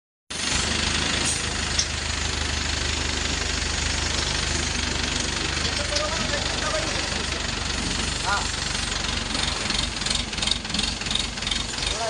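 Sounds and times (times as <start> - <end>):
engine idling: 0.3 - 12.0.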